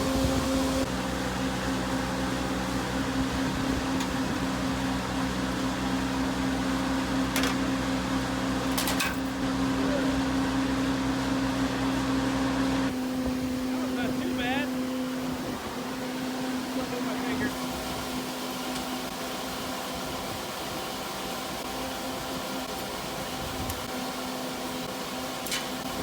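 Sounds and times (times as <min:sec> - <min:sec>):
farm machinery drone: 0:00.0 - 0:26.0.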